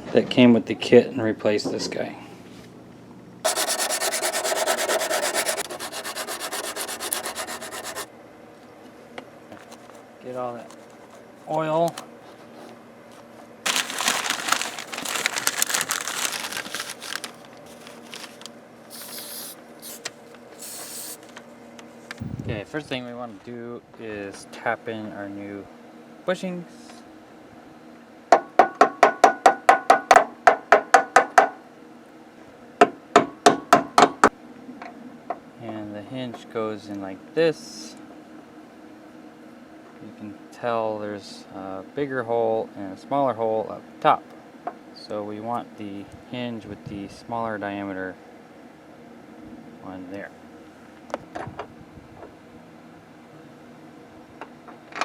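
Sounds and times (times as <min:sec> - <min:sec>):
hand scrubbing on metal: 0:03.5 - 0:08.1, 0:18.9 - 0:21.3.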